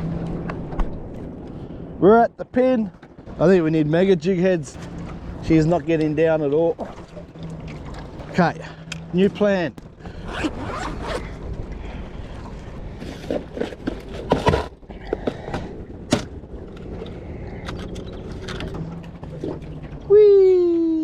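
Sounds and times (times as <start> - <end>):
steady low hum: 0.0 - 21.0
fishing gear clicks and scrapes: 16.6 - 19.6.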